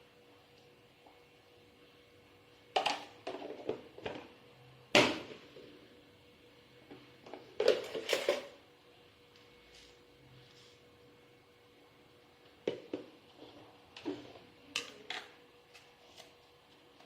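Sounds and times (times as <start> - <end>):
kitchen utensils and dishes clattering: 7.3 - 8.6.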